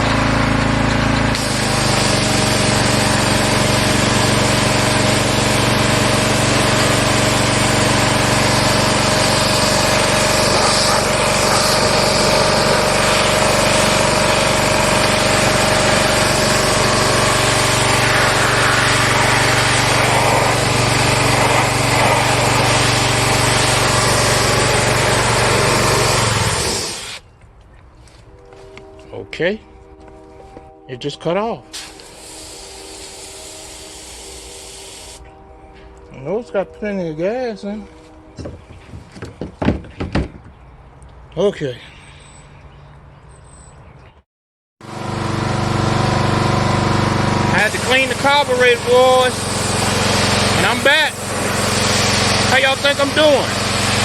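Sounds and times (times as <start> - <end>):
small gasoline engine running: 0.0 - 27.2, 44.8 - 54.0
water spray hissing: 1.3 - 27.2, 31.7 - 35.2, 47.5 - 54.0.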